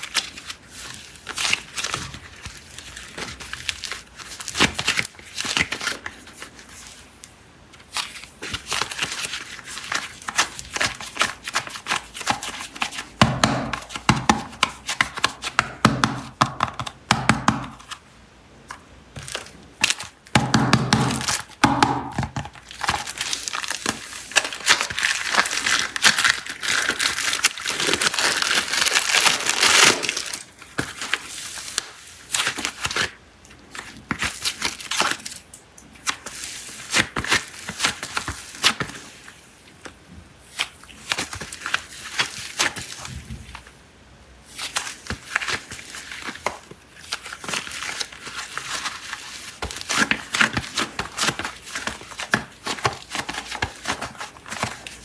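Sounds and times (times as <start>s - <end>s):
plastic wrappers crinkling and tearing: 0.0s - 7.0s, 7.8s - 15.6s, 19.2s - 20.4s, 21.0s - 21.7s, 22.3s - 43.7s, 44.5s - 55.0s.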